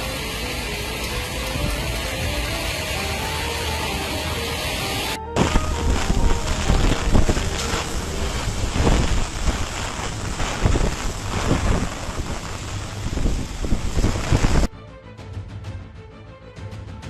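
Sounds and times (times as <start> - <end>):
wind buffeting microphone: 5.4 - 14.7.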